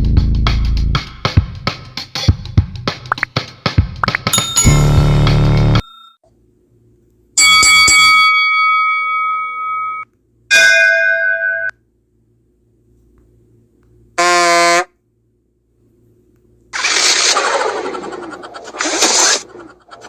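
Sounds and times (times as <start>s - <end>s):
bell-like ding: 4.3s - 5.1s, 7.4s - 11.7s
bell chime notes: 4.4s - 5.2s.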